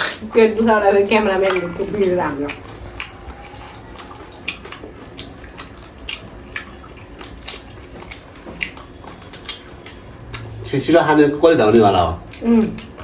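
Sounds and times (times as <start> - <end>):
people chewing chicken: 0.0 - 13.0
wet clicks and smacks: 4.3 - 10.6.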